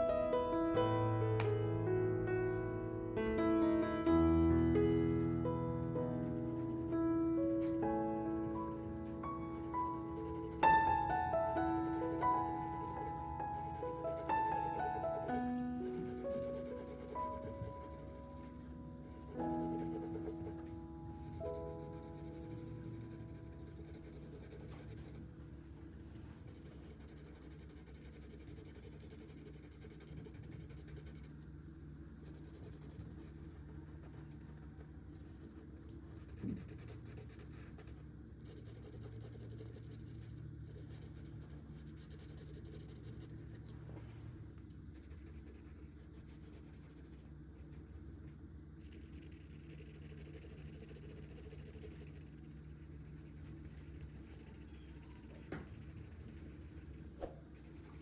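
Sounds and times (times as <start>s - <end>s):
marker scratching on paper: 4.0s - 5.4s, 7.6s - 10.8s, 11.6s - 25.2s, 26.4s - 31.3s, 36.2s - 43.5s, 48.8s - 58.0s.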